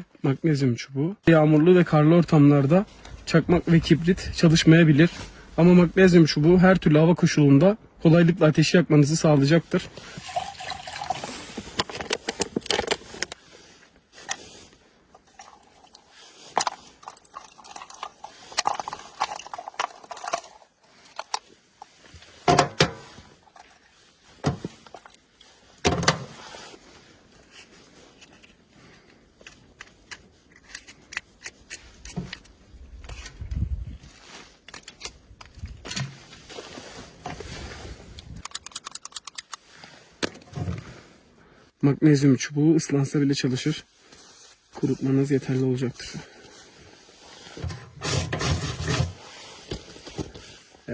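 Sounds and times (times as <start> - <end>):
gear clicking and rattling: 15.2 - 21.5.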